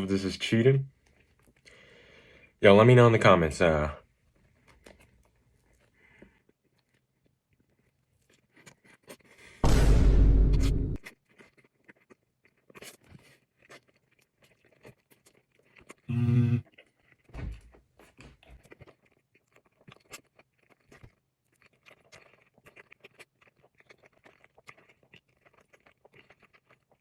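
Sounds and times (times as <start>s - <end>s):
person chewing: 0.9s - 2.6s, 4.0s - 9.7s, 10.3s - 27.0s
loud burst: 9.6s - 11.0s.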